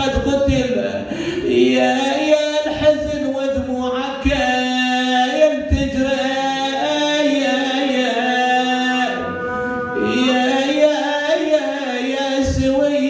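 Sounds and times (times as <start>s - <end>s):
man chanting a lament: 0.0s - 13.0s.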